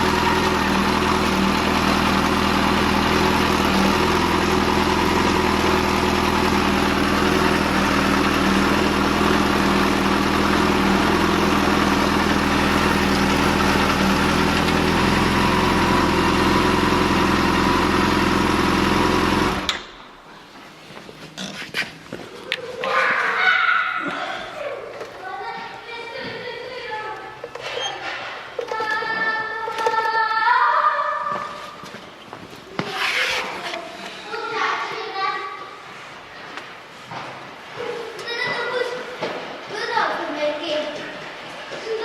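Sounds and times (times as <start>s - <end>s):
motorcycle engine idling: 0.0s - 19.9s.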